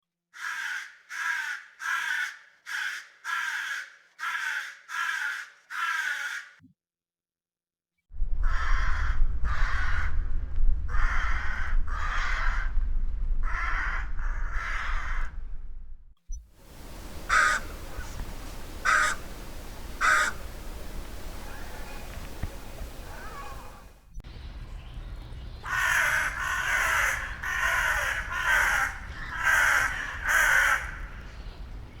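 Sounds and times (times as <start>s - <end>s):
crow cawing: 0.4s - 6.6s, 16.7s - 23.9s, 25.6s - 31.3s
steady low rumble: 15.2s - 32.0s.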